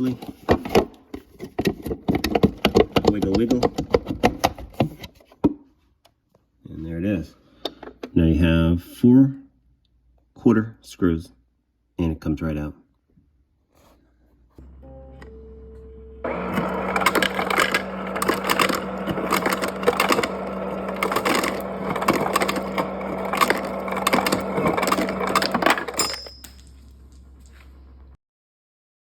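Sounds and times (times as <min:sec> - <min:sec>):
low motor hum: 0:14.6 - 0:28.2
ice cubes clattering: 0:16.3 - 0:27.6.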